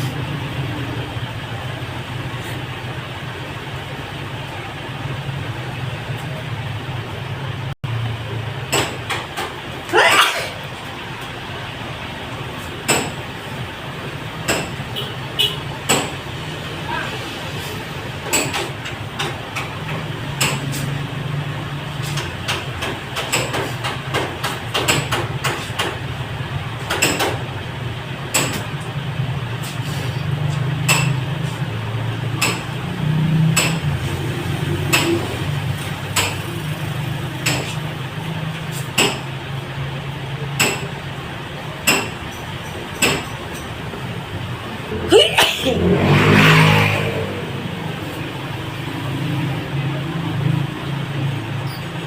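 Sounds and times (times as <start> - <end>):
sharp clicks and knocks: 18.2 - 21.0, 22.0 - 26.0, 26.8 - 27.5, 28.3 - 28.9, 30.5 - 31.2, 32.3 - 32.8, 33.5 - 33.9, 34.8 - 36.6, 37.4 - 37.9.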